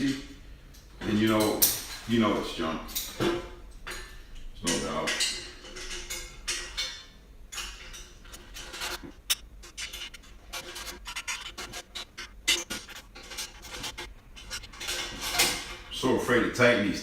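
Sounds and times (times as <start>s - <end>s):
metal bolts clicking and scraping: 2.9s - 16.0s.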